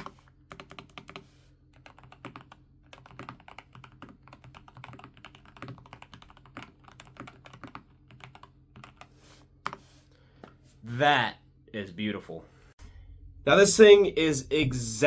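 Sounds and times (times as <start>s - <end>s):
fast typing on keyboard: 0.0s - 9.8s.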